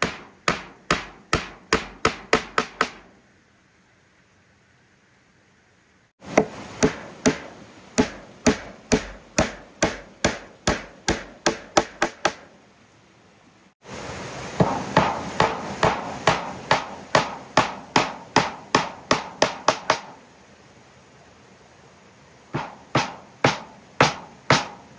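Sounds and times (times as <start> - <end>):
tool striking wood: 0.0 - 3.1, 6.2 - 12.5, 14.6 - 20.2, 22.6 - 24.9.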